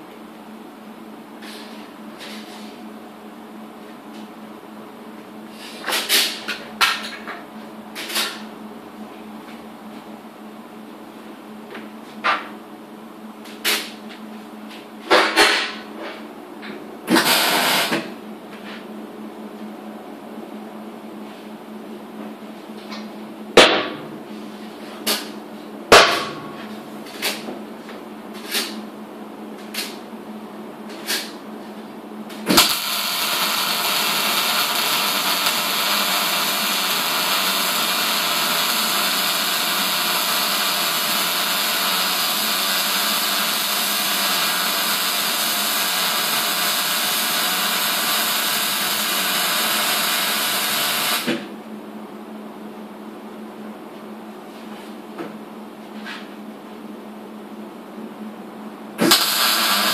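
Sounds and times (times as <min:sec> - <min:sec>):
arc welder hissing: 0:17.1 - 0:18.0, 0:32.5 - 0:51.3, 0:59.0 - 0:59.9.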